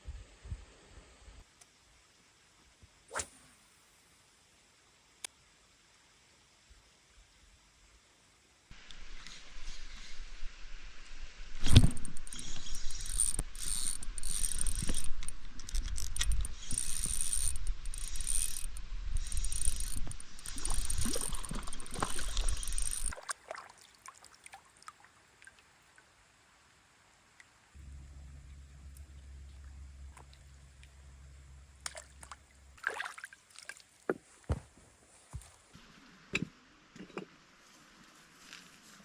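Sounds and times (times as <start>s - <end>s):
camp gear clicking and rattling: 11.6s - 23.2s.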